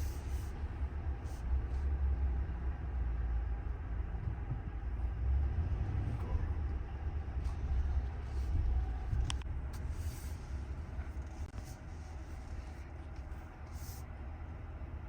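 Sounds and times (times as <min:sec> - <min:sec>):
road and drivetrain rumble: 0:00.0 - 0:15.0.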